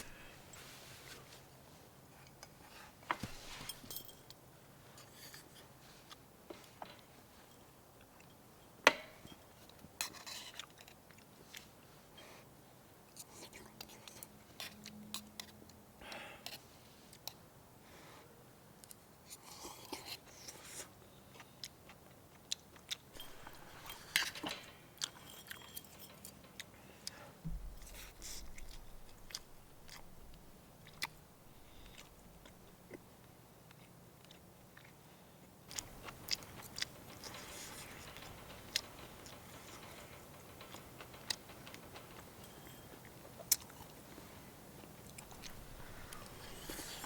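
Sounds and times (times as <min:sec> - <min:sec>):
person chewing and crunching: 0:27.8 - 0:38.1.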